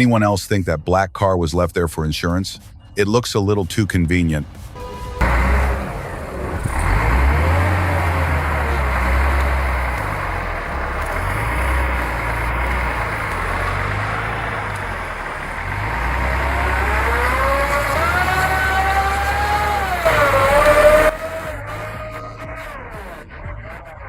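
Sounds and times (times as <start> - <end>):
engine revving: 4.8 - 24.0.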